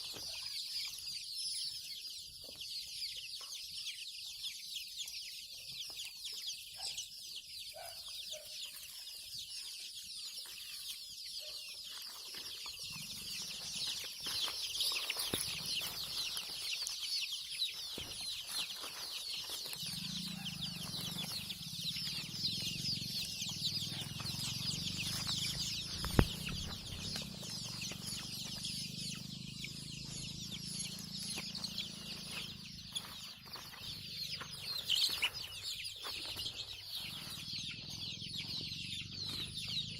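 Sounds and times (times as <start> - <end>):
chickens clucking and cheeping: 0.0 - 39.9
low hum: 23.8 - 33.6.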